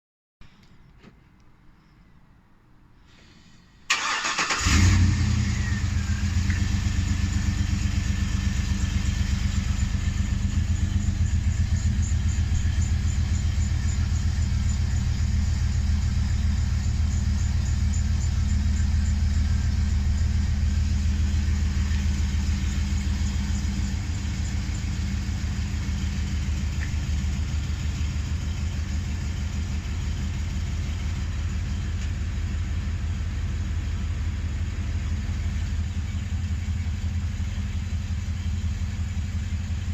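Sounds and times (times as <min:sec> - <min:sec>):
engine idling with low pulsing: 0:04.6 - 0:39.9.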